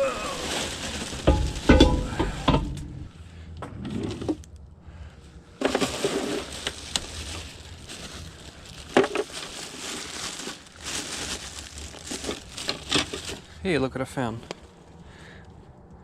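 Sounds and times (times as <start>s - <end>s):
rustling: 0.0s - 3.2s, 3.8s - 13.6s
heavy thuds of objects: 0.7s - 3.8s.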